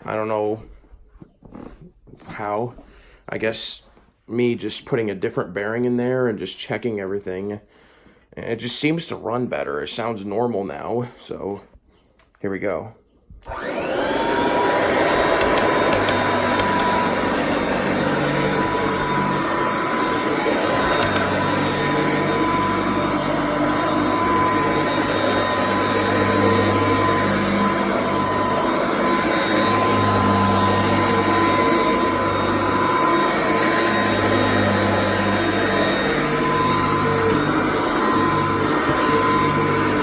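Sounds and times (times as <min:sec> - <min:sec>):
vacuum cleaner running: 0:13.4 - 0:40.0.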